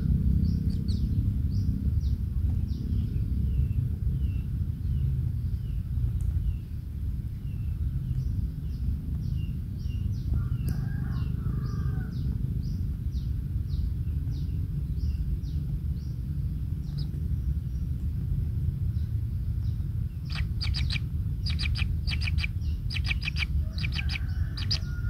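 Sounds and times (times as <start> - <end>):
low background rumble: 0.0 - 25.0
bird chirping: 0.4 - 6.8, 12.1 - 18.0, 19.0 - 25.0.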